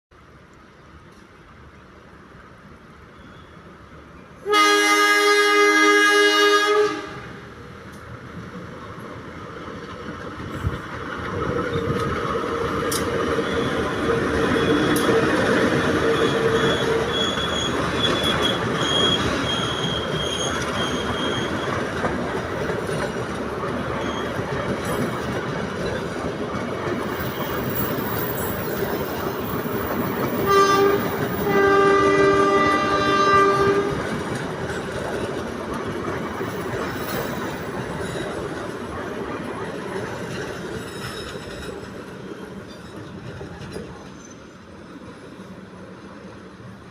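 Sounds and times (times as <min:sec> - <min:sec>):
locomotive horn blasts: 0:04.4 - 0:07.4, 0:30.4 - 0:34.0
train wheels clattering: 0:09.7 - 0:44.5
thin high squeal: 0:16.1 - 0:21.7.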